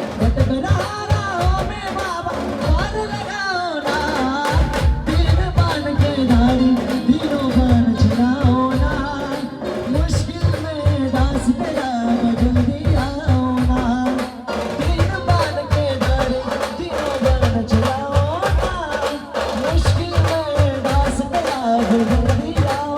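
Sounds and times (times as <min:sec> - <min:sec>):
dense drum beats: 0:00.0 - 0:22.9.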